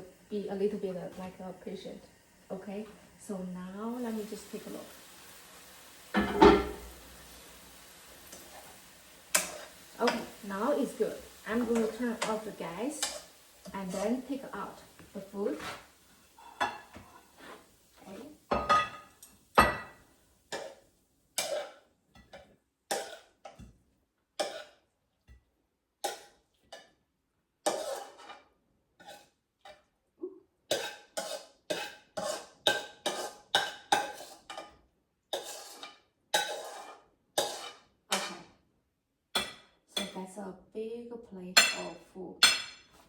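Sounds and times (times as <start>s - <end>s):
metal utensil scraping a pan: 4.0s - 7.5s, 8.2s - 20.8s, 21.4s - 23.7s, 24.4s - 24.8s, 27.6s - 29.8s, 30.7s - 38.5s.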